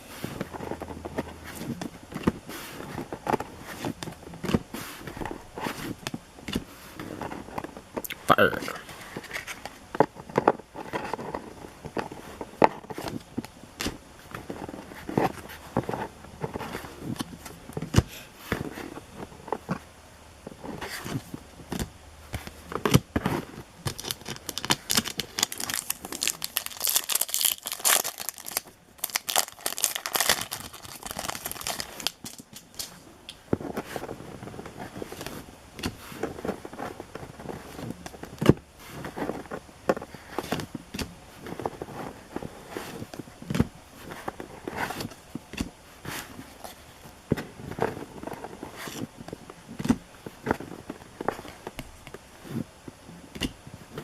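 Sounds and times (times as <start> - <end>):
cards clicking and tapping: 21.1 - 33.6
card pack wrappers crinkling: 23.5 - 33.0.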